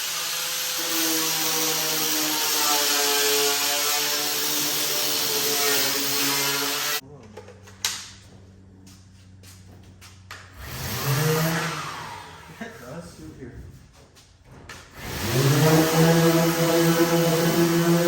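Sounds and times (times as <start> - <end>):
power tool motor whining: 15.0 - 18.0.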